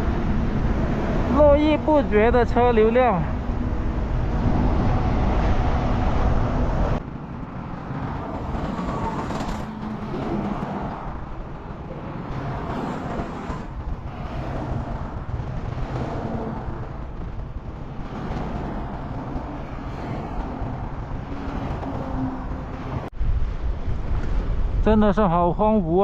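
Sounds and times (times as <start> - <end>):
highway traffic: 0.0 - 24.9
loud low rumble: 2.1 - 7.1.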